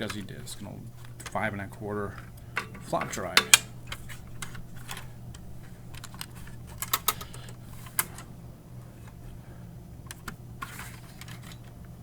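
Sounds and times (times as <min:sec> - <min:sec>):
low steady hum: 0:00.0 - 0:12.0
small plastic parts clicking: 0:02.1 - 0:08.3, 0:10.1 - 0:11.8.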